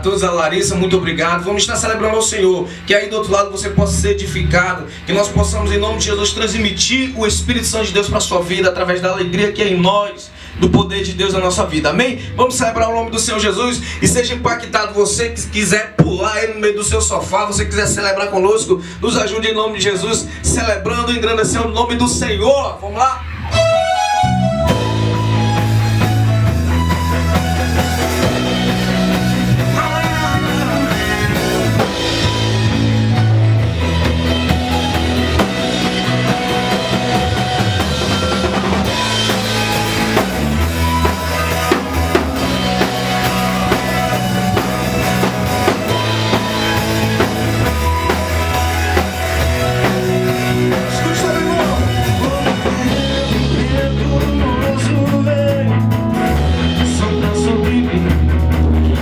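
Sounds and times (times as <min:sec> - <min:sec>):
worship band playing: 0:00.0 - 0:59.0
bass notes: 0:20.7 - 0:59.0
drum kit beat: 0:23.5 - 0:59.0.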